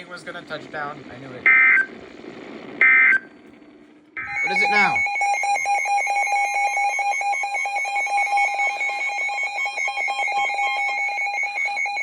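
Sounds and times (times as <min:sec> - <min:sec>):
high pulsing alarm beeps: 0:01.5 - 0:01.9, 0:02.8 - 0:03.4, 0:04.2 - 0:12.0.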